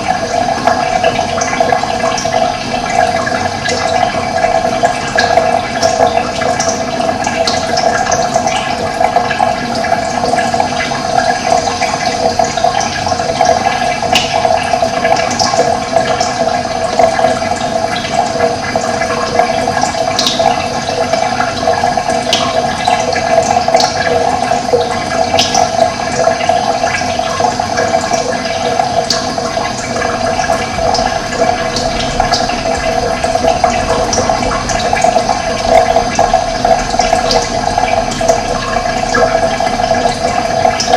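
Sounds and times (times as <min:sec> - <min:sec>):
running water rushing: 0:00.0 - 0:40.9.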